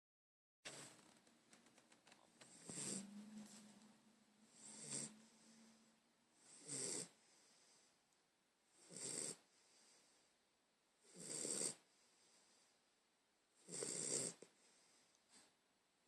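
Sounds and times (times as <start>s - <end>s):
quiet breathing: 2.1s - 13.0s, 13.7s - 15.7s
rasping snores: 2.4s - 3.6s, 4.5s - 5.8s, 6.5s - 7.2s, 8.8s - 9.5s, 11.1s - 11.8s, 13.6s - 14.5s.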